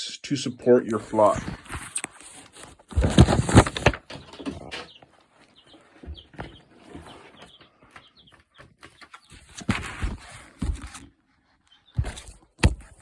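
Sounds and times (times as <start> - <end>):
chickens clucking: 4.1 - 9.6.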